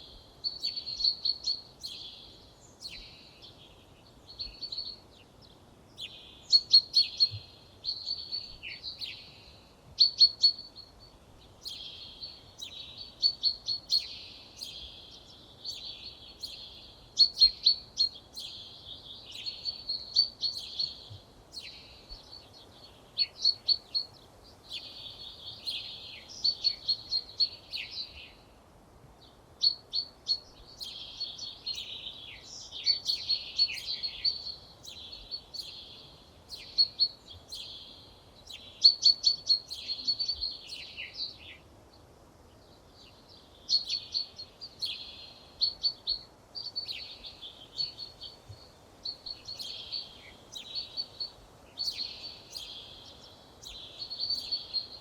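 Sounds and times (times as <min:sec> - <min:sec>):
faint outdoor hiss: 0:00.0 - 0:55.0
songbirds singing trills: 0:00.0 - 0:55.0.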